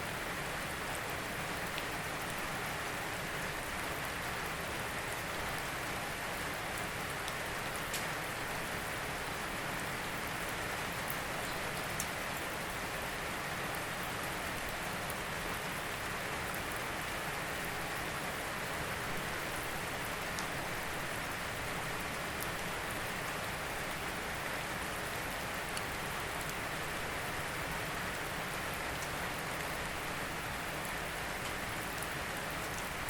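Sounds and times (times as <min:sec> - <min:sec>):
steady rain: 0:00.0 - 0:33.0.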